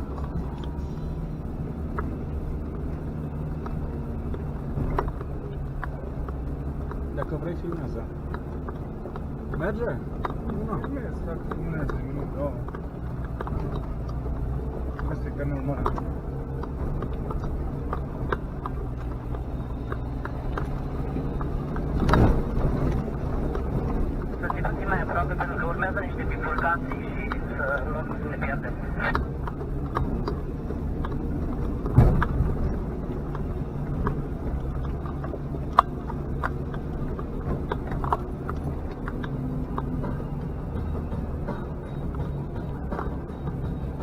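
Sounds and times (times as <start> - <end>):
sharp clicks and knocks: 0.0 - 44.0
vehicle engine running: 0.0 - 44.0
knocks and rattles: 29.1 - 44.0.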